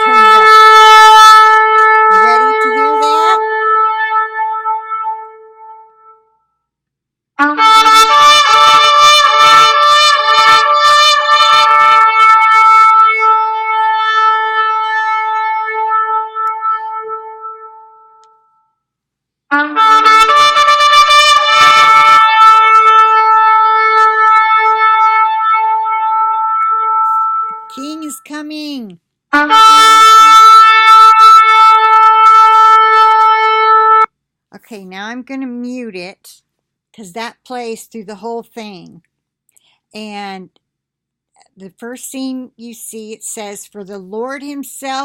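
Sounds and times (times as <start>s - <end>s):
shofar horn blasts: 0.0s - 6.4s, 7.4s - 18.7s, 19.5s - 28.6s, 29.3s - 34.1s.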